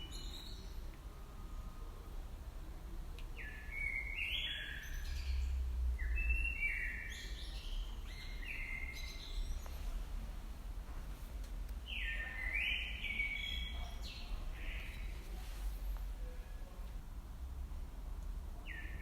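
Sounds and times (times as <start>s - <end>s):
small birds chirping: 3.2s - 10.4s, 11.7s - 16.4s.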